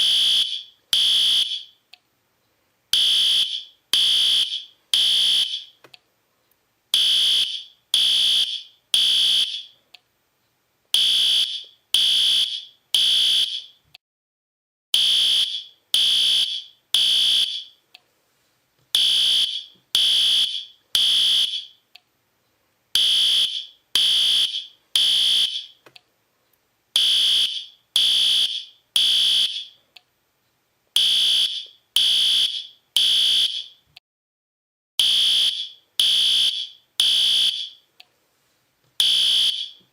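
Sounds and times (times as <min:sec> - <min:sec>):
fire alarm shrill beeps: 0:00.0 - 0:01.8, 0:03.0 - 0:05.8, 0:07.0 - 0:09.7, 0:11.0 - 0:13.8, 0:15.0 - 0:17.8, 0:19.0 - 0:21.8, 0:23.0 - 0:25.8, 0:27.0 - 0:29.8, 0:31.0 - 0:33.8, 0:35.0 - 0:37.8, 0:39.0 - 0:39.8.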